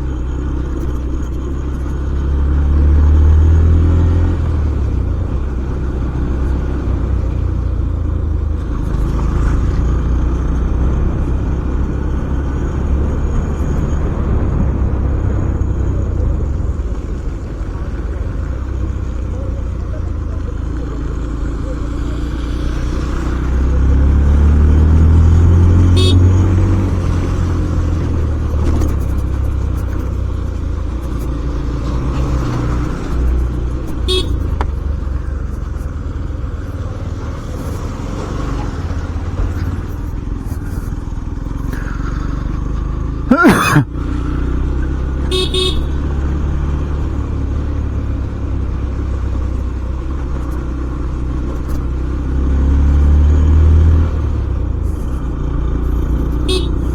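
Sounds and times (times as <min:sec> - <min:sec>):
motorcycle engine humming: 0:00.0 - 0:56.9
horn blast: 0:26.0 - 0:26.4, 0:34.1 - 0:34.4, 0:45.3 - 0:46.0, 0:56.5 - 0:56.8.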